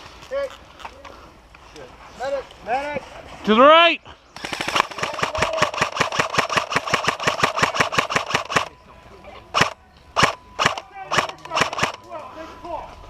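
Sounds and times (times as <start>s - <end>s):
airsoft gun firing: 4.4s - 8.7s, 9.5s - 12.0s.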